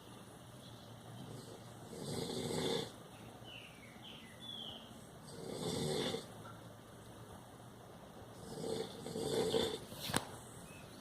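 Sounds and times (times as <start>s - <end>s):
pet snoring: 1.2s - 3.0s, 5.2s - 6.3s, 8.4s - 9.9s.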